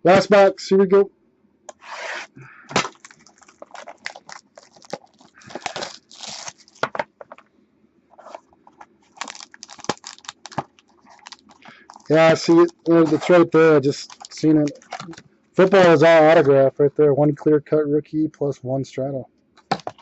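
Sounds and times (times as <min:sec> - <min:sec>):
plastic wrapping tearing and crinkling: 0:02.7 - 0:07.0, 0:09.1 - 0:15.2.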